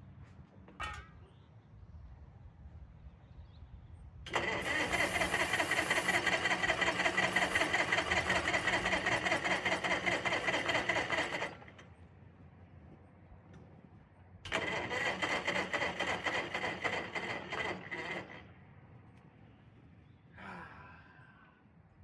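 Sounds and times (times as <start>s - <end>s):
electric starter cranking motor: 4.3s - 11.9s, 14.5s - 18.5s.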